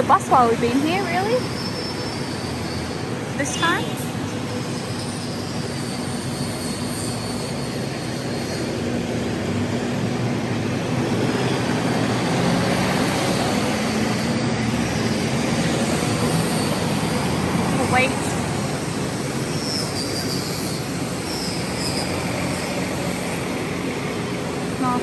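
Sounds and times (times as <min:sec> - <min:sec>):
motor vehicle engines passing: 0:00.0 - 0:25.0.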